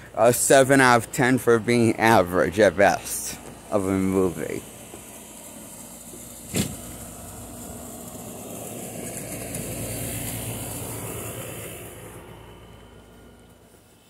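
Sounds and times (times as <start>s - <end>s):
vehicle passing by: 0.0s - 14.0s
sharp knock: 6.5s - 6.8s.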